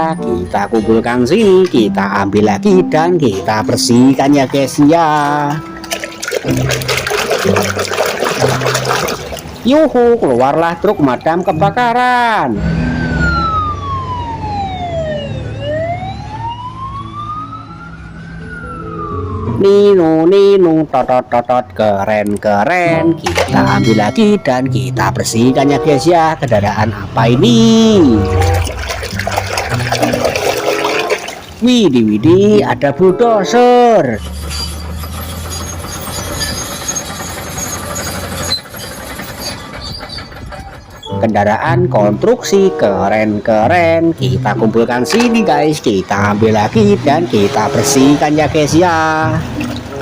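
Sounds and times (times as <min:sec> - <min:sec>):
brush scrubbing plastic toy: 0:05.0 - 0:09.6, 0:28.2 - 0:31.6
fire truck siren wailing: 0:12.5 - 0:20.8, 0:25.3 - 0:38.8
low hum: 0:26.9 - 0:30.6.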